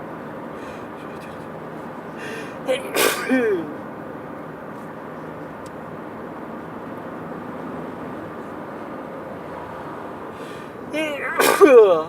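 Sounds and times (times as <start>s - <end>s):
car engine hum: 0.0s - 12.0s
road noise inside car: 0.0s - 12.0s.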